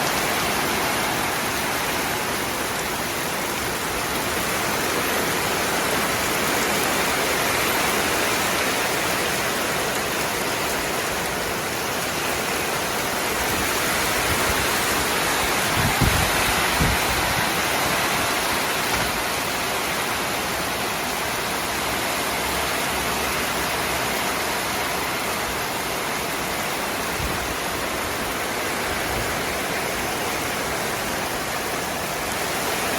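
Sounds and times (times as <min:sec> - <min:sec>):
steady rain hiss: 0:00.0 - 0:32.9.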